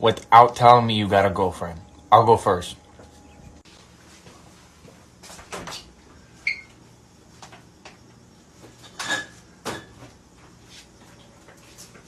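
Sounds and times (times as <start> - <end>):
brief high squeak: 6.4 - 6.7.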